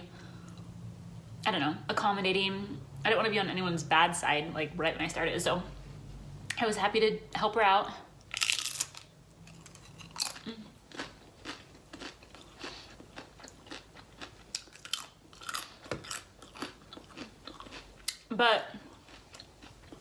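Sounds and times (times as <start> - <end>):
chewing crunchy food: 8.3 - 20.0.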